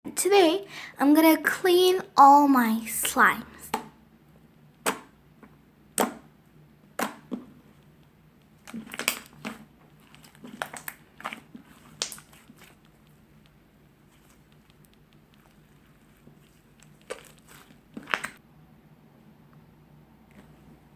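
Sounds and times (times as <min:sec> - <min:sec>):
slime clicking and popping: 0:08.0 - 0:13.6, 0:16.6 - 0:18.4.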